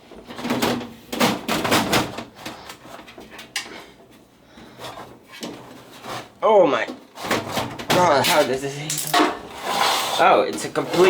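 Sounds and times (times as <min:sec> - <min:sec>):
metal and plastic parts scraping: 0:07.2 - 0:11.0.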